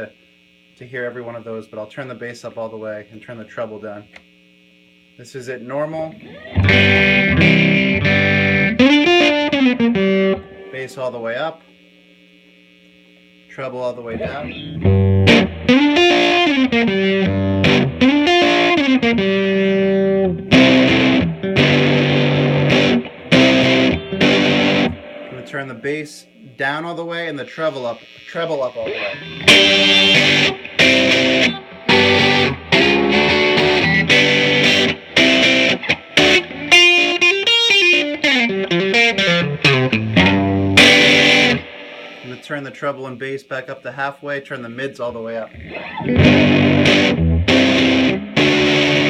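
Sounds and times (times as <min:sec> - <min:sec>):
electric guitar playing: 0:06.2 - 0:10.8, 0:14.1 - 0:25.5, 0:28.8 - 0:42.4, 0:45.5 - 0:49.0.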